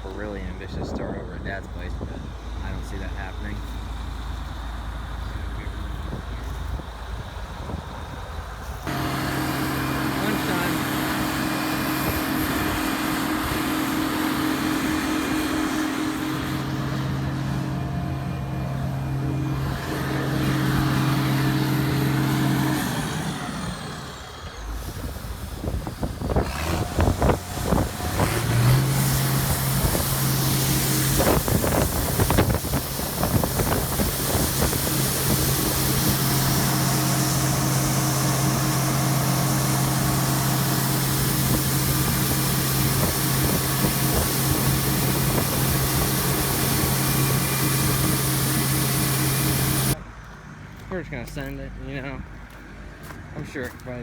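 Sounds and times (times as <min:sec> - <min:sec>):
vehicle engine running: 0:00.0 - 0:51.6.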